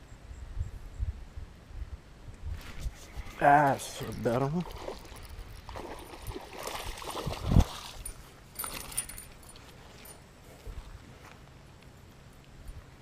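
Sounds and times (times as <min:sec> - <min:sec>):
handling clicks and rattles: 0:08.0 - 0:10.2.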